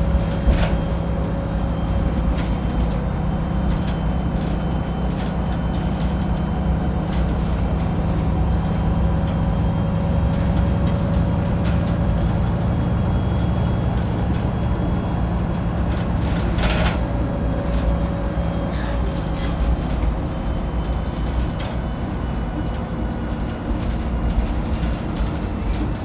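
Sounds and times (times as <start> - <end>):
bus engine drone with whine: 0.0 - 26.0.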